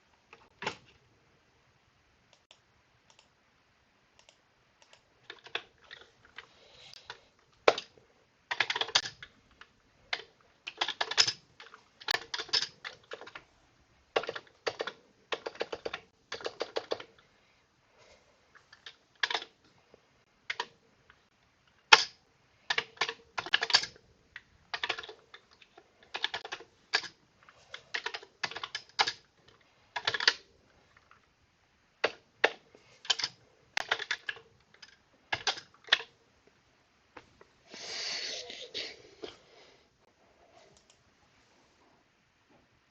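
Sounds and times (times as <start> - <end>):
mechanical keyboard typing: 4.2 - 13.5, 14.1 - 17.2, 18.6 - 19.6, 20.4 - 20.8, 21.7 - 31.2, 32.0 - 36.2.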